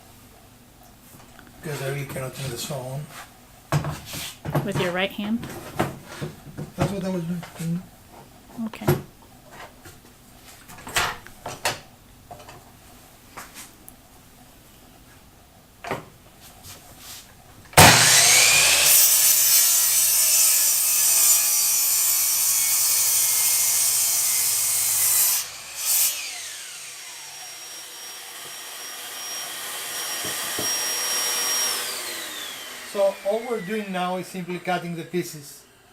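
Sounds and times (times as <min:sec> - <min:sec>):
power saw cutting wood: 0:17.8 - 0:35.9
saw winding down whine: 0:17.8 - 0:35.9.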